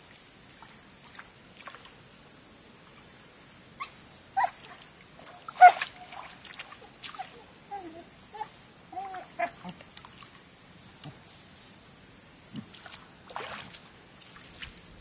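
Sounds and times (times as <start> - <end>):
thin high whistling animal calls: 2.4 - 6.3.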